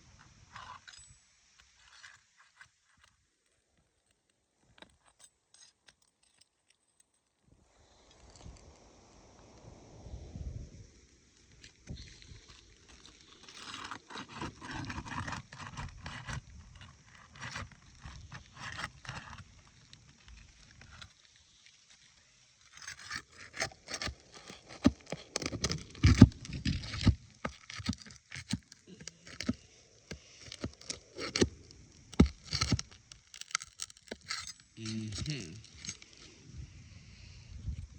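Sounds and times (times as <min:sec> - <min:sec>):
tool scraping roof shingles: 0:12.9 - 0:19.5.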